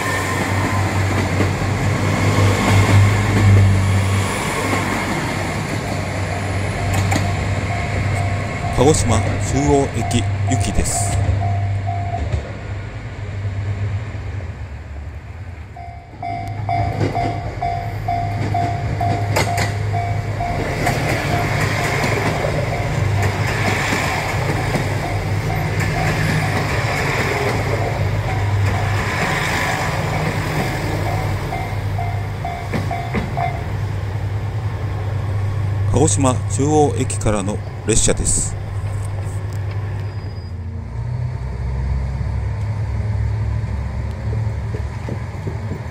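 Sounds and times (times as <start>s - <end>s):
train wheels rumbling on rails: 0.0s - 45.9s
level-crossing alarm bell ringing: 5.8s - 12.4s, 15.7s - 29.1s, 30.0s - 33.8s.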